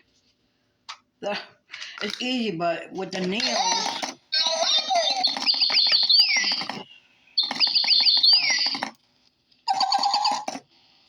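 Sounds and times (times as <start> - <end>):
pet birds chirping and whistling: 3.4 - 8.9, 9.7 - 10.6.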